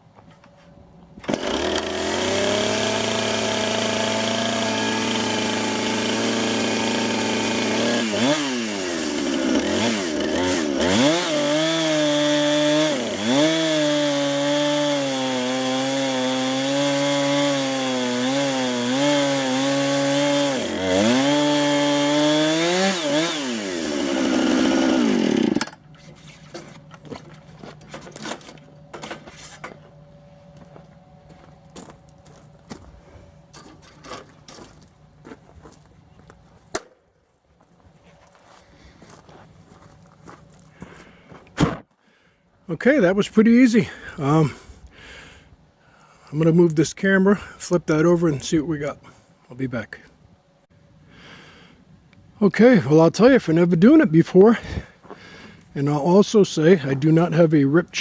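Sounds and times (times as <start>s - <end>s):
chainsaw cutting log: 1.2s - 25.8s.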